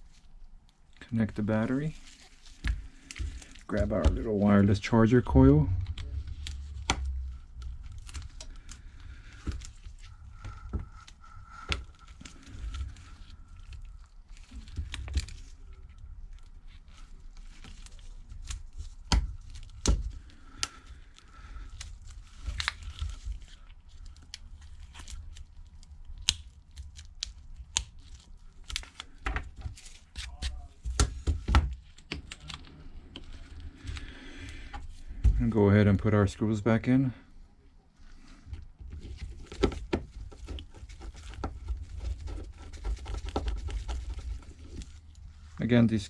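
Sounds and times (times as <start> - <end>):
plastic crinkling and rustling: 0.0 - 35.6, 38.2 - 46.0
steady low hum: 1.0 - 24.6.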